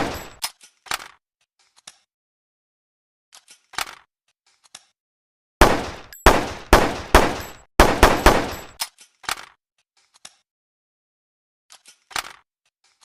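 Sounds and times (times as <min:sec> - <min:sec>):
handgun shots: 0:00.0 - 0:00.4, 0:05.6 - 0:08.8.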